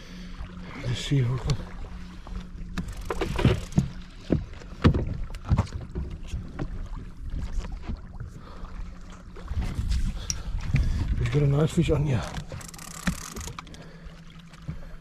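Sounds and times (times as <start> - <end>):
steady low hum: 0.0 - 15.0
fishing tackle knocking and clicking: 12.4 - 13.7.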